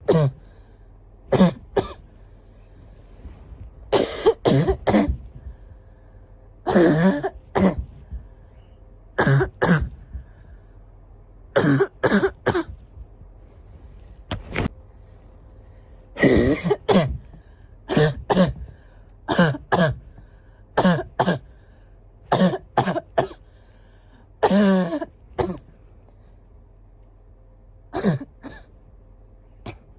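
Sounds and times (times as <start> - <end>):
person barking cough: 1.3 - 2.0, 3.9 - 5.2, 6.7 - 7.9, 9.2 - 10.0, 11.6 - 12.8, 16.2 - 17.2, 17.9 - 18.6, 19.3 - 20.0, 20.8 - 21.5, 22.3 - 23.4, 24.4 - 25.6, 28.0 - 28.7.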